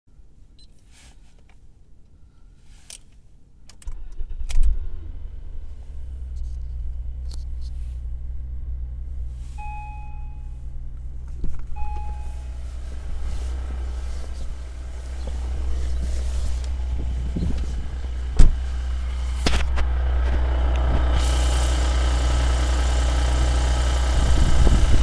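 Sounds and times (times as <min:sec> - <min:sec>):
car engine starting and idling: 0:03.6 - 0:25.0
short electronic beeps: 0:09.6 - 0:10.6, 0:11.7 - 0:12.7.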